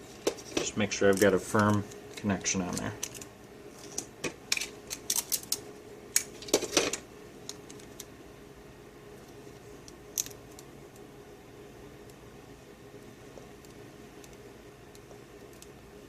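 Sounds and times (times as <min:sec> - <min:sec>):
light clicks and crinkles: 0:00.2 - 0:05.6.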